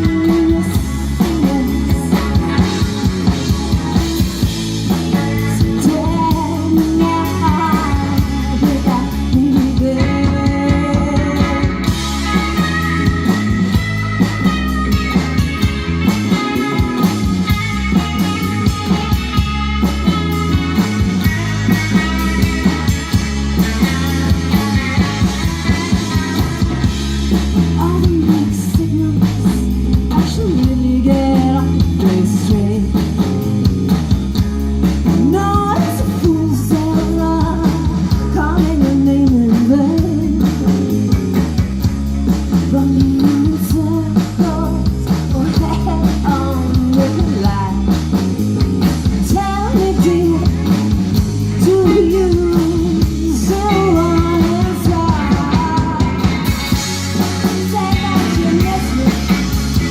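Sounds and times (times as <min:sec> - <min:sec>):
person singing: 0:00.0 - 0:03.1, 0:04.9 - 0:14.7, 0:27.6 - 0:33.4, 0:35.1 - 0:41.4, 0:42.7 - 0:47.9, 0:49.2 - 0:50.9, 0:51.5 - 0:59.9
bass guitar: 0:00.0 - 0:59.9
drum kit: 0:00.0 - 0:59.9
electric guitar: 0:00.0 - 0:59.9.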